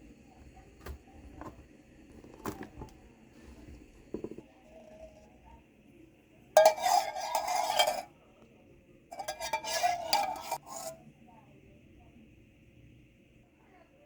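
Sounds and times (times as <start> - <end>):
metal utensil scraping a dish: 6.6 - 8.1, 9.1 - 11.0.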